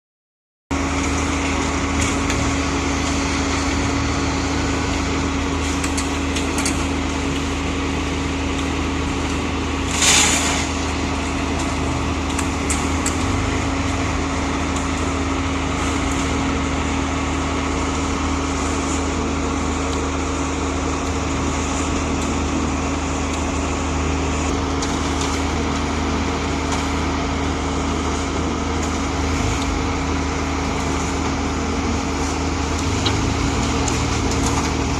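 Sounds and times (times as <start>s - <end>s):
diesel engine humming: 0.7s - 34.9s.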